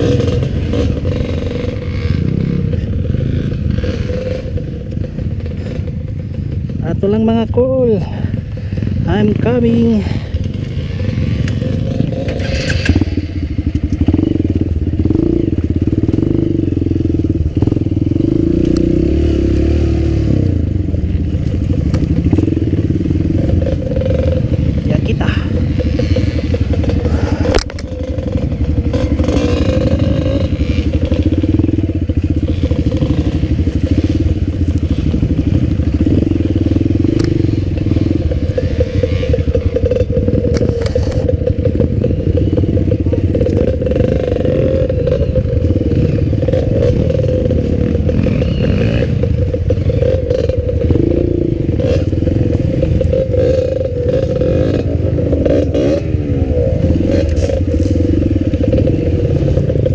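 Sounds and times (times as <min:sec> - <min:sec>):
knocks and clatter from bike: 0:00.0 - 0:06.8, 0:09.7 - 0:19.1, 0:20.8 - 0:59.9
motorcycle engine running: 0:00.0 - 0:59.9.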